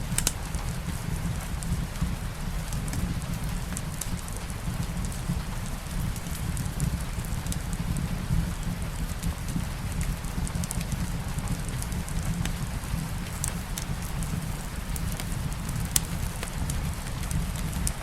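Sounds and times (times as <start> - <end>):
fireplace crackling: 0.0 - 18.0
steady rain hiss: 0.0 - 18.0
deep steady rumble: 10.2 - 18.0.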